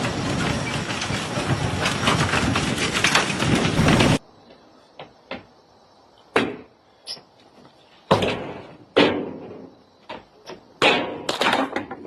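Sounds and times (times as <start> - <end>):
sharp knocks and bangs: 0.0 - 4.2, 6.3 - 6.7, 8.1 - 12.0.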